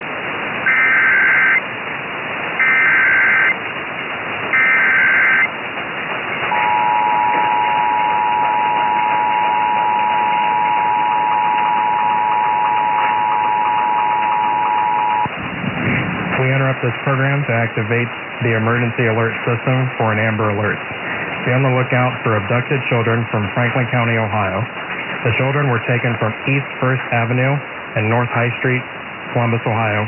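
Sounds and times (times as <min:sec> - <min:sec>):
radio static: 0:00.6 - 0:01.7, 0:02.5 - 0:03.8, 0:04.4 - 0:30.0
screechy digital data bursts: 0:00.7 - 0:01.6, 0:02.6 - 0:03.6, 0:04.6 - 0:05.5
two-tone alert signal: 0:00.7 - 0:01.6, 0:02.6 - 0:03.6, 0:04.6 - 0:05.5, 0:06.5 - 0:15.3.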